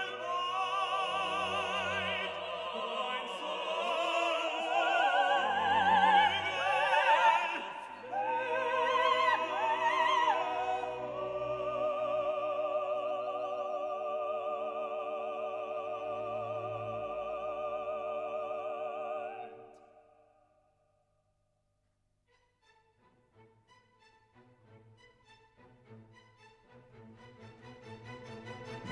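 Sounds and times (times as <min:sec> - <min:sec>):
operatic voice singing: 0:00.0 - 0:19.9.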